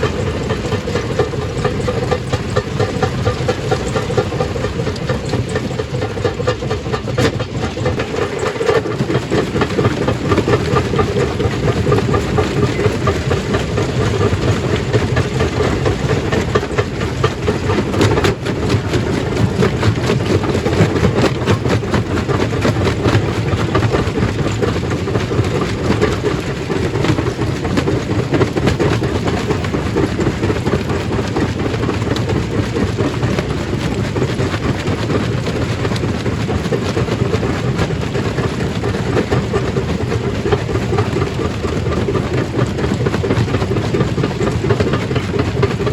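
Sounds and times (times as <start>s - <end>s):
stone crushing machine running: 0.0s - 45.9s.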